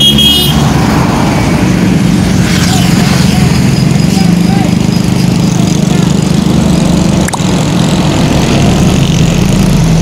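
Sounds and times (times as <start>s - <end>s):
bus engine running: 0.0s - 10.0s.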